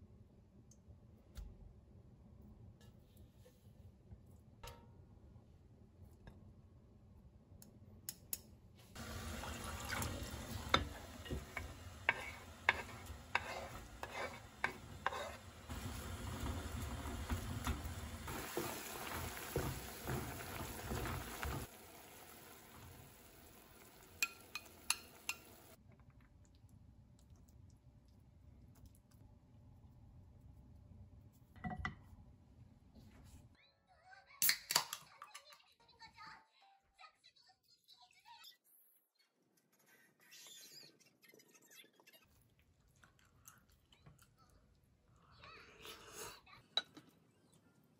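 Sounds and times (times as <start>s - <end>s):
food frying in a pan: 8.9s - 25.8s
utensil scraping a pan: 10.7s - 16.4s.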